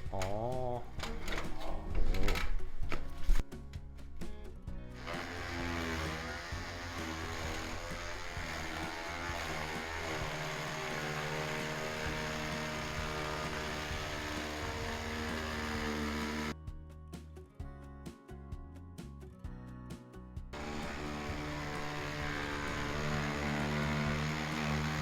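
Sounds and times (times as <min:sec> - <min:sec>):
motor-driven machine running: 0:04.9 - 0:16.5, 0:20.6 - 0:25.0.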